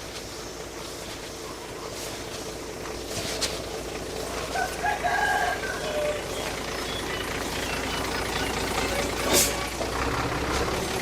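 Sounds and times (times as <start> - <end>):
distant diesel machinery engine: 0.0 - 11.0.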